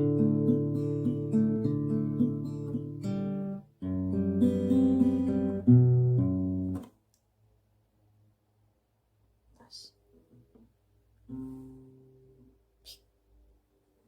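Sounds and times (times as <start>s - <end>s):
acoustic guitar strummed chords: 0.0s - 6.8s.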